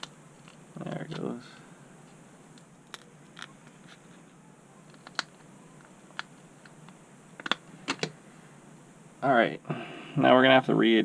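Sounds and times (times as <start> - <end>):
small parts and tool clicking: 4.9 - 5.4.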